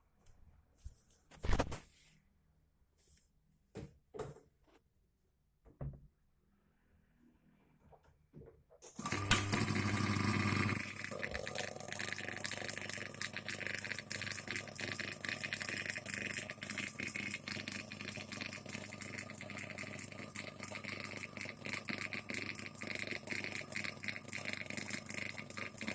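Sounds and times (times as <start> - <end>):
spin dryer motor humming: 8.9 - 11.5.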